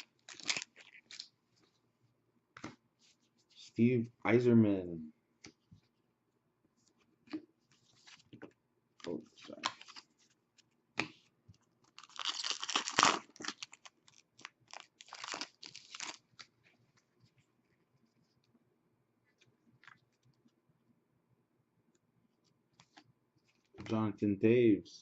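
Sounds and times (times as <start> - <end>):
wrapper tearing and crinkling: 0.0 - 1.3, 11.9 - 16.5.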